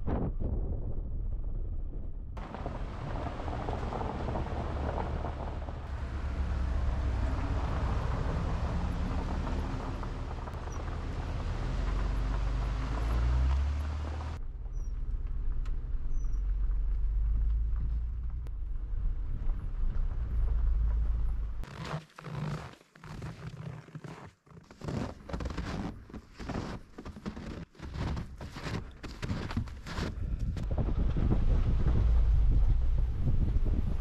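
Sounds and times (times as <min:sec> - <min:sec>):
vehicle engine and tyres rumbling: 0:00.0 - 0:23.4, 0:24.6 - 0:34.0.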